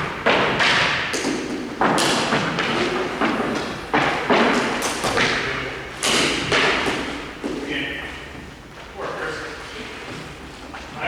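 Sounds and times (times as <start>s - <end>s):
hockey pucks and sticks knocking: 0.0s - 7.8s.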